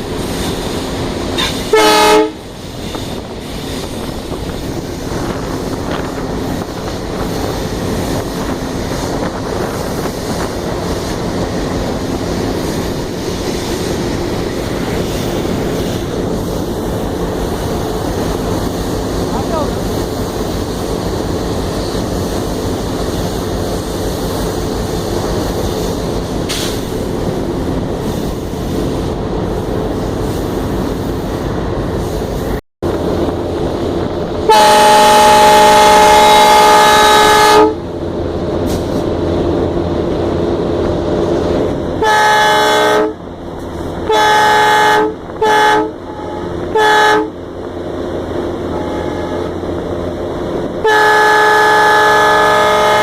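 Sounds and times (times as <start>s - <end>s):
diesel locomotive running: 0.0s - 53.0s
locomotive horn blasts: 1.4s - 2.4s, 34.4s - 37.8s, 42.0s - 43.2s, 44.0s - 47.4s, 48.7s - 49.6s, 50.8s - 53.0s.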